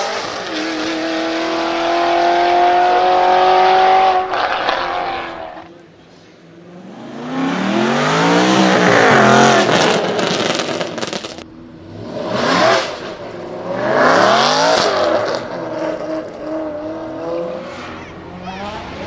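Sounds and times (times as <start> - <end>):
racing engine under hard throttle: 0.0 - 19.0
sharp engine crackles: 7.4 - 16.5.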